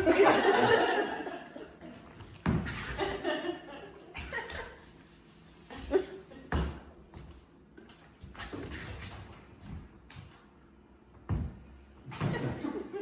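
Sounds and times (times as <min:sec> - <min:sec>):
audience laughing: 0:00.0 - 0:02.0, 0:02.9 - 0:04.8.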